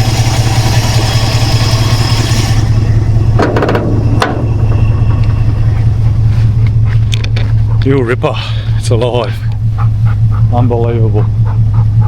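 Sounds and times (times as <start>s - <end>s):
car engine idling with a miss: 0.0s - 12.0s
sharp clicks and knocks: 3.4s - 5.9s, 6.5s - 7.9s.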